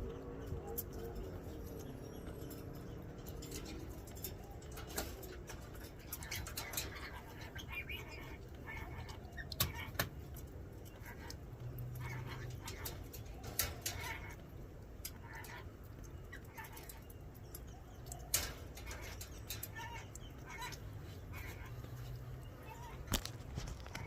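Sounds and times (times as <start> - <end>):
birds chirping: 0.0 - 24.0
sharp clicks and knocks: 9.3 - 15.2, 15.8 - 20.9.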